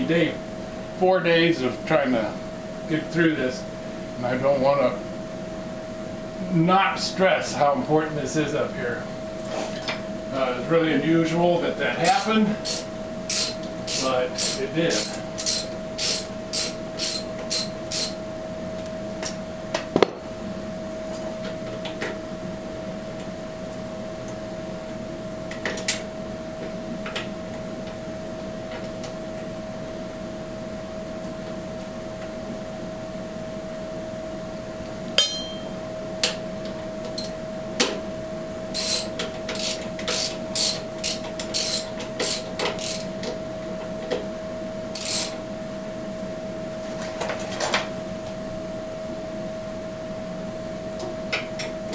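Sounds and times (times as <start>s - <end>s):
hammer tapping on metal: 35.2s - 35.8s.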